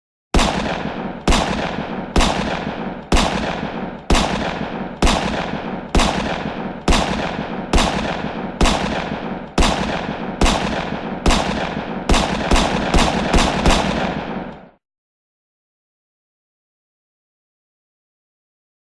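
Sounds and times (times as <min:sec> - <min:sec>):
gunshots with echo: 0:00.4 - 0:14.8.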